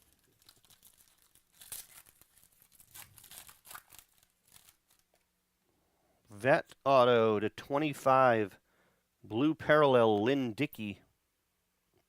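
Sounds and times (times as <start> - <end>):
wrapper tearing and crinkling: 0.0 - 5.2.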